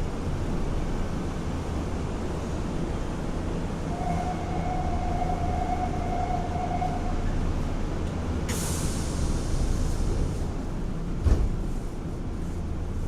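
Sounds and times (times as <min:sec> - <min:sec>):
train rumble: 0:00.0 - 0:13.0
sharp air hiss: 0:08.5 - 0:10.1.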